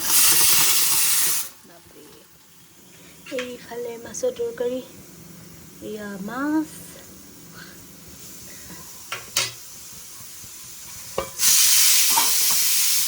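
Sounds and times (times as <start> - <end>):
pressure cooker steam hissing: 0.0 - 1.7, 2.6 - 13.0
sharp kitchen clicks: 9.1 - 9.6.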